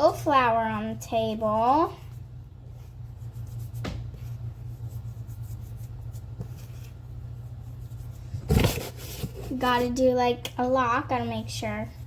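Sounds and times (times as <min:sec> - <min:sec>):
low steady hum: 0:00.0 - 0:12.0
hand rustling flour on table: 0:01.4 - 0:09.7.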